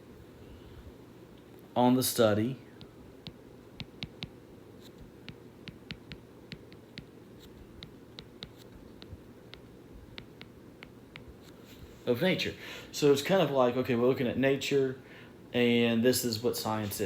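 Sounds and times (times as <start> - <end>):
low room hum: 0.0 - 17.0
pen ticking while writing: 2.8 - 7.1, 7.8 - 11.3.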